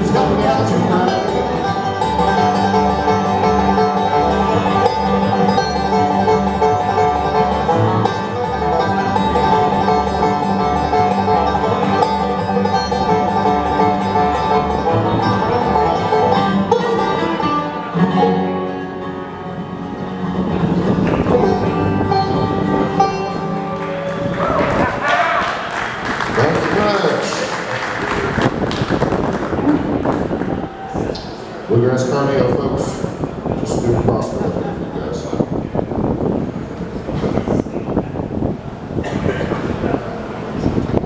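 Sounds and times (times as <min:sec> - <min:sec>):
banjo picking: 0:00.0 - 0:24.9
bluegrass band playing: 0:00.0 - 0:25.0, 0:26.2 - 0:34.6
guitar picking: 0:00.0 - 0:25.0
bass line: 0:00.0 - 0:25.1, 0:27.8 - 0:31.2.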